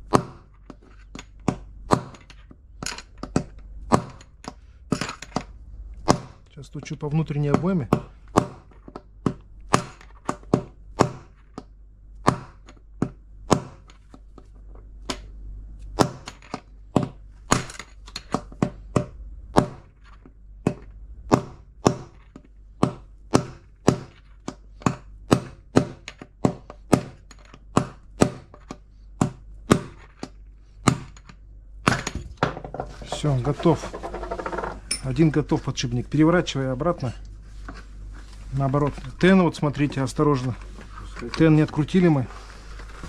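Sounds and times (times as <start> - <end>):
hammer knocking on metal bearing: 20.6 - 30.1.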